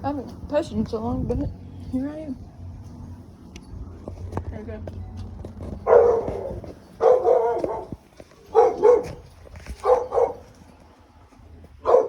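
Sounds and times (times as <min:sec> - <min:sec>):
dog barking: 0:05.8 - 0:10.5.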